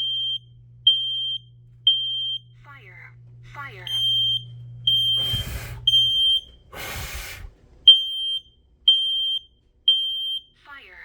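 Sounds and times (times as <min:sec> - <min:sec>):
smoke alarm beeping: 0:00.0 - 0:02.7, 0:03.6 - 0:10.6
hissing rush: 0:05.2 - 0:05.9, 0:06.7 - 0:07.6.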